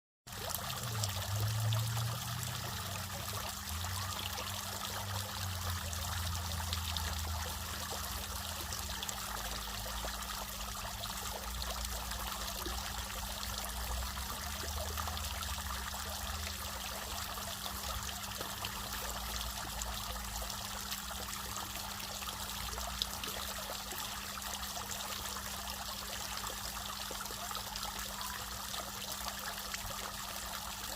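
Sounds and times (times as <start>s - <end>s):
water splashing and trickling: 0.3s - 30.9s.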